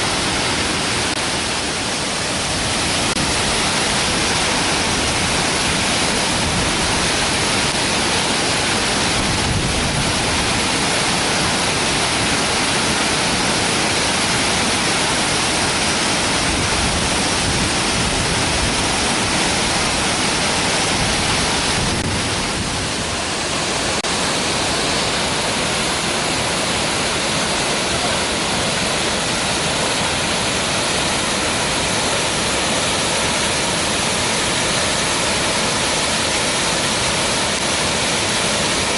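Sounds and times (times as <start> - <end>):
waterfall pouring: 0.0 - 38.9.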